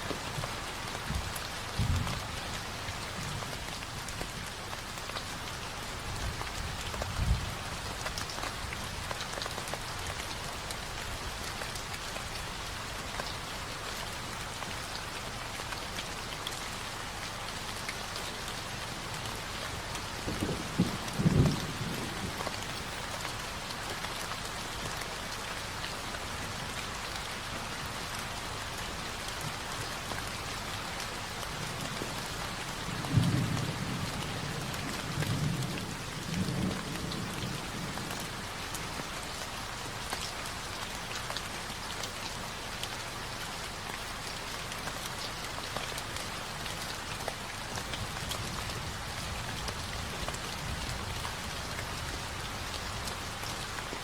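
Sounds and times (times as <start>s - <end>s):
rain falling steadily: 0.0s - 54.0s
rolling thunder: 20.2s - 22.8s.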